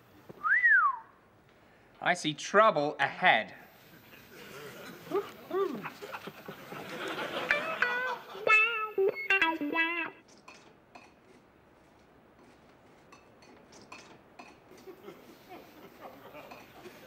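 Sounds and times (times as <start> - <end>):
guitar music sting: 7.5 - 10.2.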